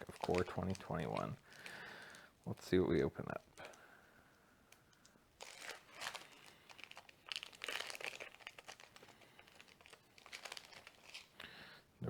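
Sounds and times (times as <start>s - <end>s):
plastic wrapper tearing and crinkling: 0.0s - 3.8s, 4.8s - 11.5s.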